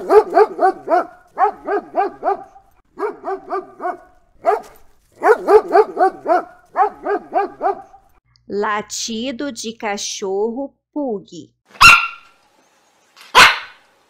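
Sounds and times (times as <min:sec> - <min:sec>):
dog barking: 0:00.0 - 0:08.2, 0:11.8 - 0:12.3, 0:13.3 - 0:13.8.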